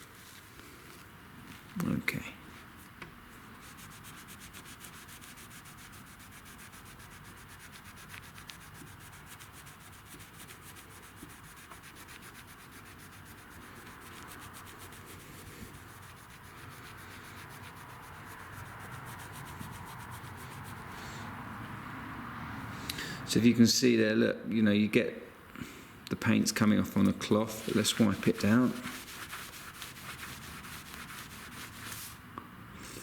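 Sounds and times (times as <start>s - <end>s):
cloth rubbing on car paintwork: 2.4s - 21.6s, 26.5s - 32.3s.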